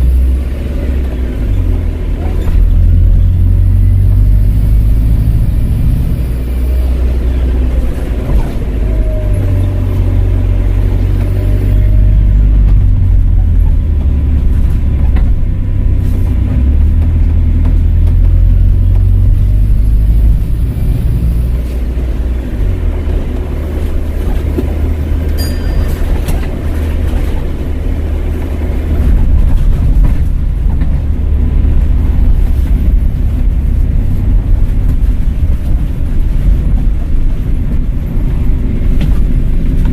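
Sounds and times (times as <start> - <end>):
bus engine rumble: 0.0 - 39.9.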